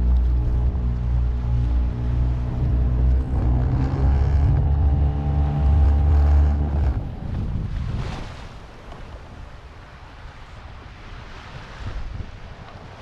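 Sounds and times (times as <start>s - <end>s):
boat engine running: 0.0s - 7.9s
water lapping against hull: 0.0s - 13.0s
wind on microphone: 0.0s - 13.0s.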